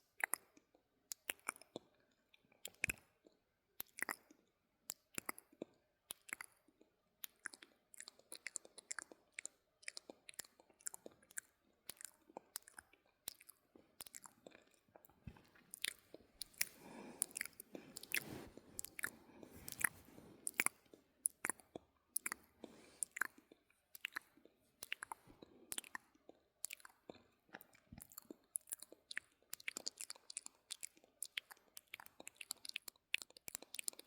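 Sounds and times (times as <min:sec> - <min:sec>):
wet lip and tongue clicks: 0:00.0 - 0:34.0
soft breathing: 0:14.6 - 0:23.7.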